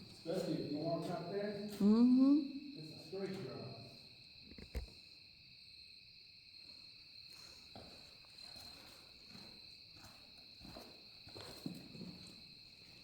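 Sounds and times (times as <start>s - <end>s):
insects droning: 0.0s - 13.0s
faint shuffles: 7.3s - 13.0s.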